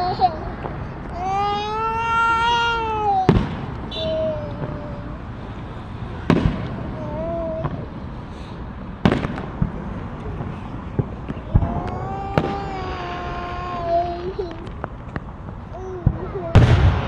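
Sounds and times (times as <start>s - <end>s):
distant fireworks crackle: 0.0s - 17.0s
fireworks bangs: 0.0s - 17.0s.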